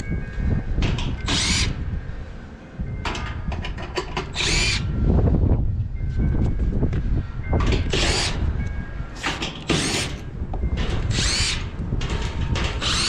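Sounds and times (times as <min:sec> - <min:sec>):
wind buffeting microphone: 0:00.0 - 0:13.0
cordless power driver whining: 0:01.2 - 0:01.8, 0:04.2 - 0:05.0, 0:10.9 - 0:13.0.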